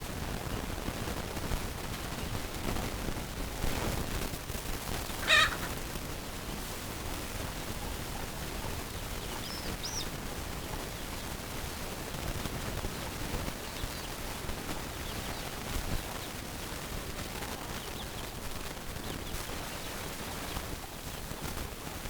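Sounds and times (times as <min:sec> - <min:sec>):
chicken squawk: 0:05.0 - 0:05.8.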